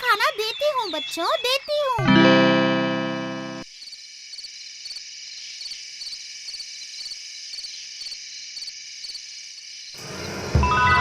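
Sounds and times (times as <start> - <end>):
crickets chirping: 3.6 - 11.0.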